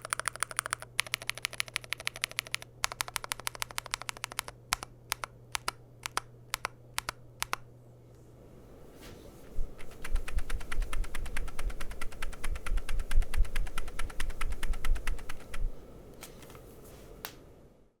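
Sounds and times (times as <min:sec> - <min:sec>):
fast keyboard typing: 0:00.0 - 0:07.6, 0:09.8 - 0:15.7.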